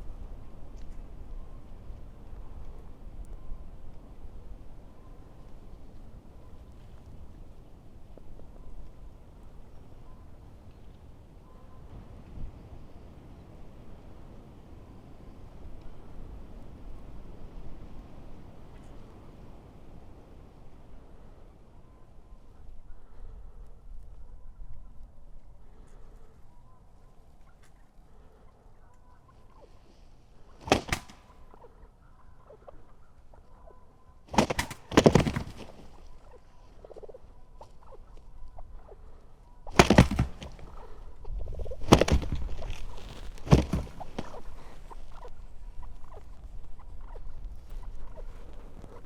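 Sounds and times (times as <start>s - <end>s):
turkey gobbling: 0.0s - 12.2s, 25.6s - 49.0s.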